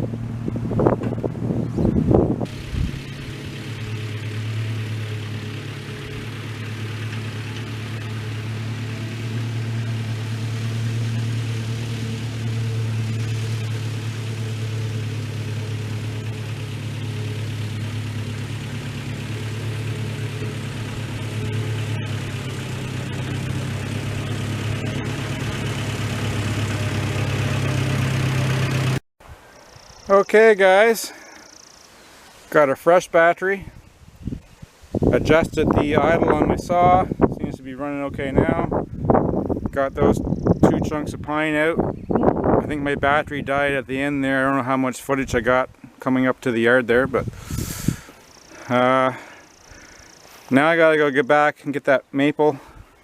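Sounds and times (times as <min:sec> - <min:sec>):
gusty rumble: 0:00.0 - 0:28.2, 0:33.6 - 0:44.0, 0:47.0 - 0:48.1
vehicle engine running steadily: 0:00.0 - 0:53.0.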